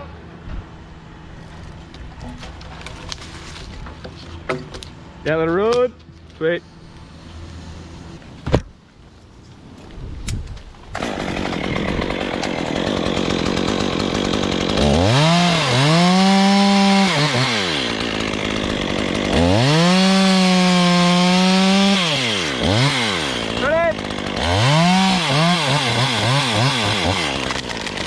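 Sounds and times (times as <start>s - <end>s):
chainsaw revving: 11.0s - 28.0s.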